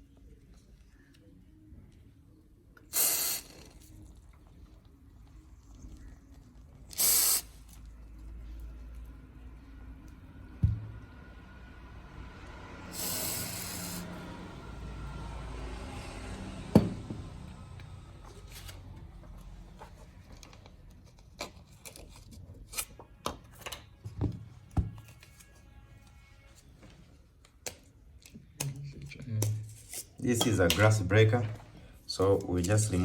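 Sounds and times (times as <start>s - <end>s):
aerosol spraying: 2.9s - 3.8s, 6.9s - 7.8s, 12.9s - 14.4s.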